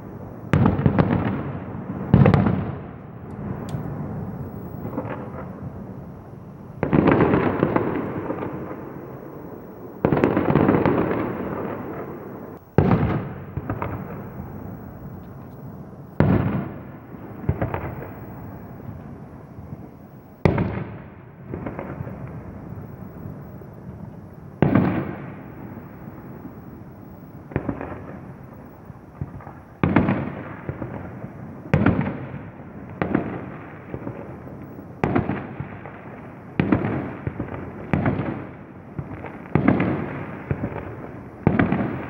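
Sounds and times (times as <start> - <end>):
echoing rumble and crackle: 0.0 - 29.6
fireworks banging: 0.0 - 31.0
small firework pops: 39.0 - 42.0.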